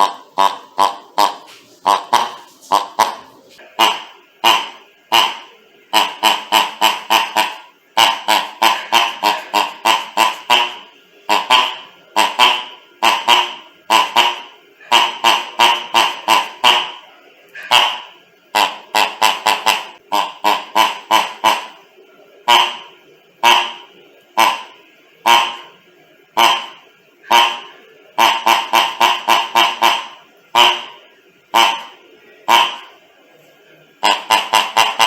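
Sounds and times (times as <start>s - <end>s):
rubber toy squeaking: 0.0s - 17.0s.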